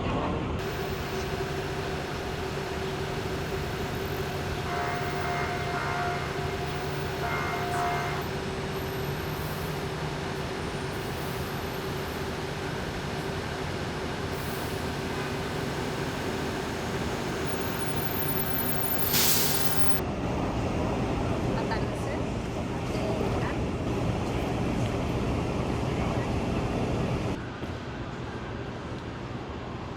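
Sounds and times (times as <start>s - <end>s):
city traffic: 0.0s - 29.9s.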